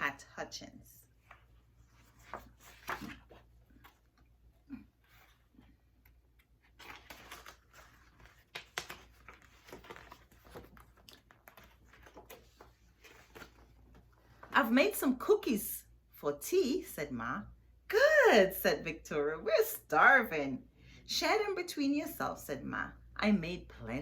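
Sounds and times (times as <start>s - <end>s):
book pages turning: 1.1s - 14.6s
paper rustling: 1.2s - 4.3s, 5.0s - 14.6s.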